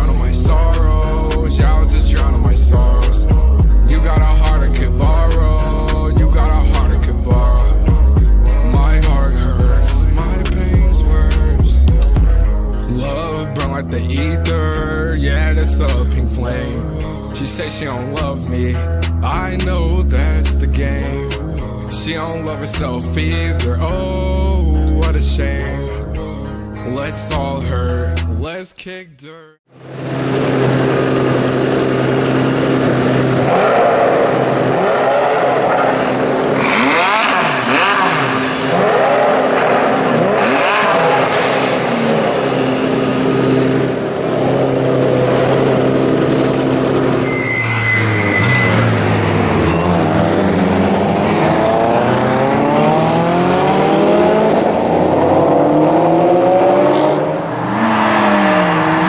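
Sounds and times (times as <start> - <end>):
race car engine revving: 0.0 - 25.6, 29.7 - 59.0
race car accelerating through gears: 29.8 - 59.0.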